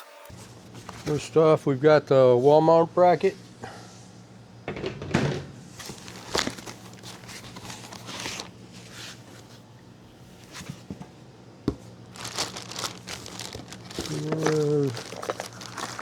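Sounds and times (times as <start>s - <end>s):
packaging rustling: 5.8s - 9.3s, 12.1s - 16.0s.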